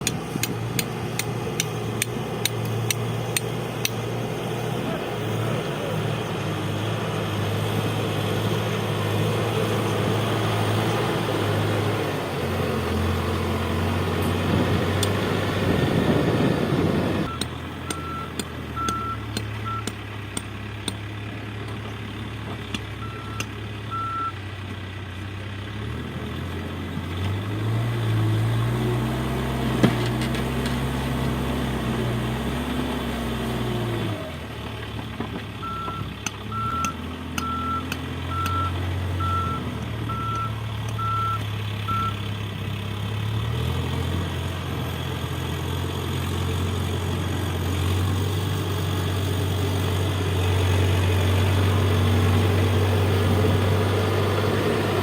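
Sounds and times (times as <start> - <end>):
heavy machine engine running: 0.0 - 55.0
reversing alarm beeping: 17.3 - 20.0, 23.0 - 24.4, 35.6 - 42.2.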